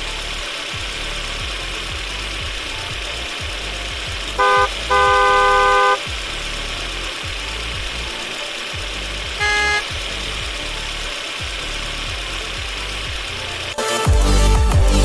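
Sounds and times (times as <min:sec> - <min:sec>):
low engine rumble: 0:00.0 - 0:15.0
vehicle horn honking: 0:04.4 - 0:06.1, 0:09.3 - 0:10.0.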